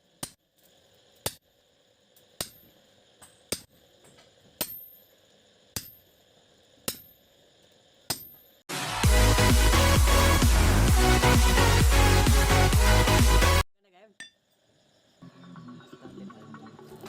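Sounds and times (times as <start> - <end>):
hammer striking steel on anvil: 2.4 - 3.7, 4.6 - 5.1, 5.8 - 6.2, 6.8 - 7.3, 8.1 - 8.5.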